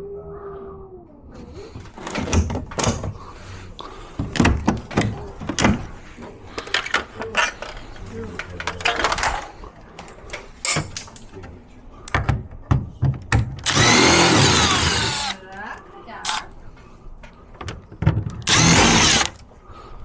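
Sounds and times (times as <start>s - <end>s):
objects knocking and clattering: 4.2s - 11.5s, 12.1s - 15.2s, 17.6s - 19.4s.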